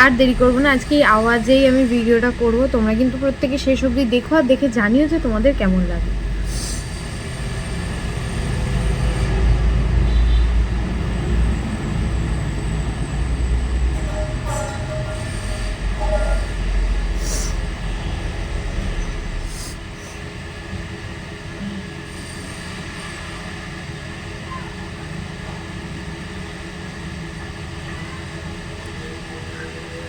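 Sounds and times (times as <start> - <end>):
faint whine: 10.0 - 20.2.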